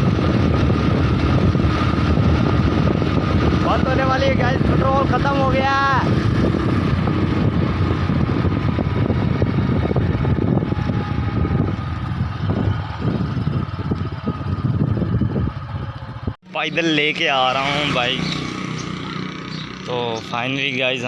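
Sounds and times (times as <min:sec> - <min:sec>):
wind rushing over microphone: 0:00.0 - 0:16.4
motorcycle engine running: 0:00.0 - 0:21.0.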